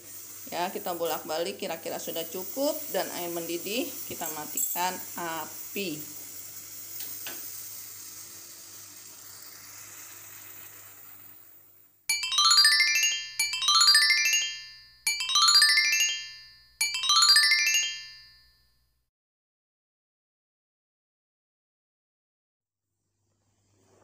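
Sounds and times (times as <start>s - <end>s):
hiss: 0.0s - 11.7s, 23.2s - 24.0s
bright musical jingle: 12.1s - 18.6s.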